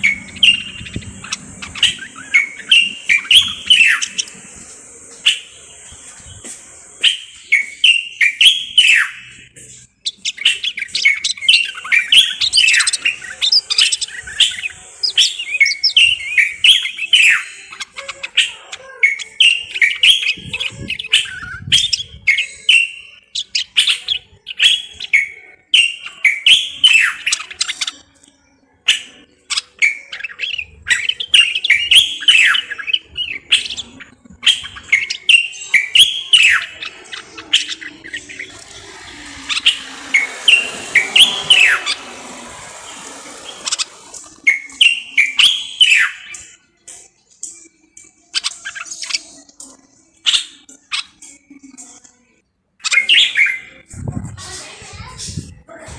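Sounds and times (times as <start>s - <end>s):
bird singing whistled phrases: 0.0s - 4.4s, 29.5s - 46.4s.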